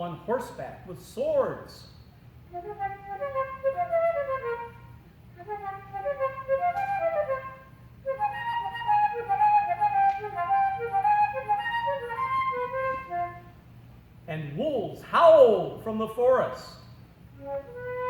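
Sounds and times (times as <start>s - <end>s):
solo flute playing: 2.4s - 13.8s, 17.3s - 18.0s.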